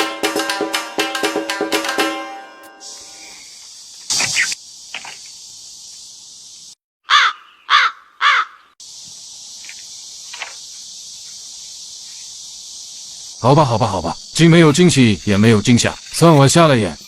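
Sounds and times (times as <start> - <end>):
night insects hissing: 2.7 - 6.8, 8.3 - 17.0
crow caws: 7.0 - 8.8.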